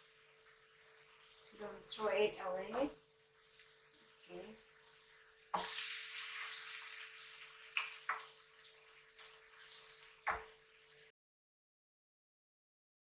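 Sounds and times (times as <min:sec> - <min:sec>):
chicken sizzling in oil: 0:00.0 - 0:11.1.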